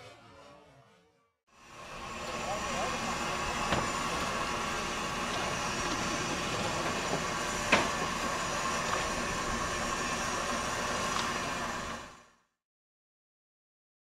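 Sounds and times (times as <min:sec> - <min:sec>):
steam hissing: 0:01.6 - 0:12.3.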